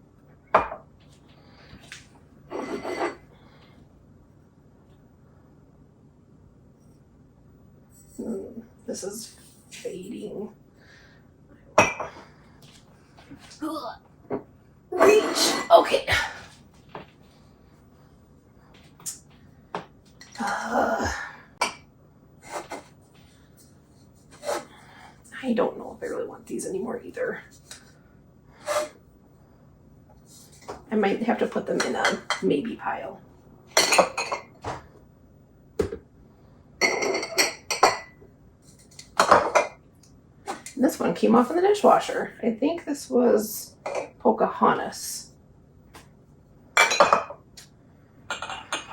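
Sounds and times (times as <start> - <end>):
cups and kitchen items knocking: 0.5 - 0.9
cups and glasses clinking: 11.8 - 12.2, 33.8 - 34.6, 36.8 - 38.2, 46.8 - 47.4.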